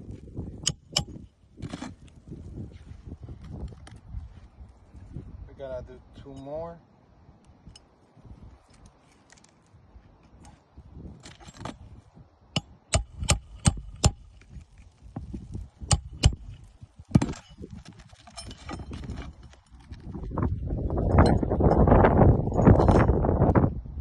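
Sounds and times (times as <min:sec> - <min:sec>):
handling noise: 0:07.6 - 0:12.0, 0:12.6 - 0:23.2
hammer driving nails into shingles: 0:12.6 - 0:14.3, 0:15.9 - 0:17.5.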